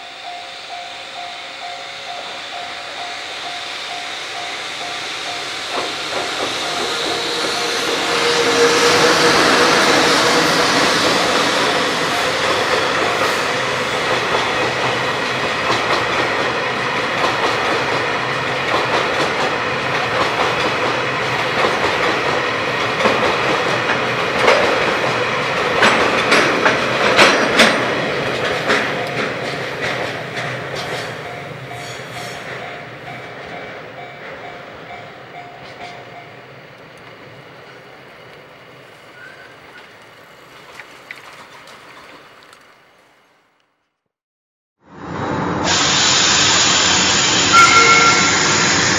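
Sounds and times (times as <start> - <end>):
train wheels clattering on rails: 1.6 - 40.7.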